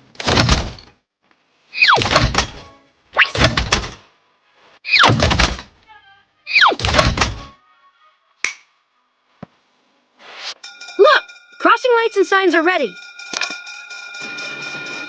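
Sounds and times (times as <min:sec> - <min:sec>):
heavy thud: 0:05.0 - 0:05.7.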